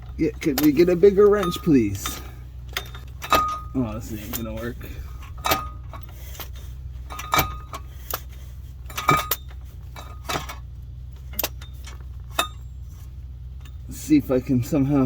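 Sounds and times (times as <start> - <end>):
metal hand tools clinking: 0.0 - 14.0
steady low hum: 0.0 - 15.0
wrench knocking against metal: 0.4 - 3.8.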